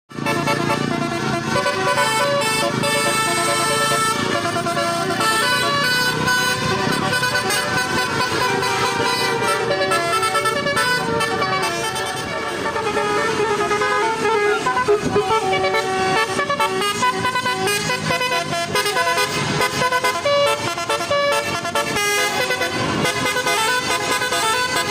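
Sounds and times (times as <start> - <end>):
musical horn playing a tune: 0.1 - 24.9.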